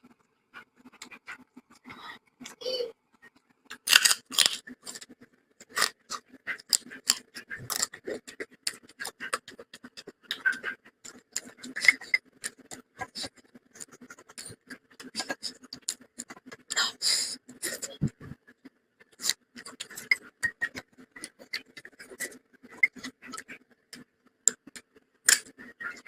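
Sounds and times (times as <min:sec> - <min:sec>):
person chewing and eating: 0:03.3 - 0:16.9, 0:19.0 - 0:26.0.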